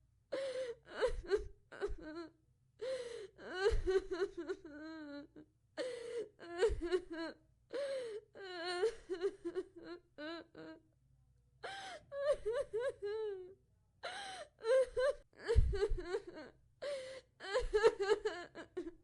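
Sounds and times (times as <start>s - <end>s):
woman crying: 3.4s - 10.8s, 11.7s - 13.5s, 14.1s - 19.0s.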